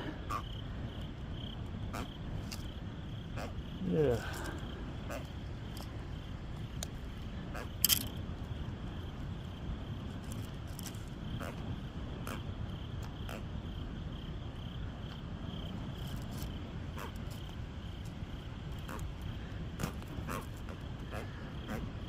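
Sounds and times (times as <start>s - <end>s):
low constant rumble: 0.0s - 22.0s
night insects trilling: 0.0s - 22.0s.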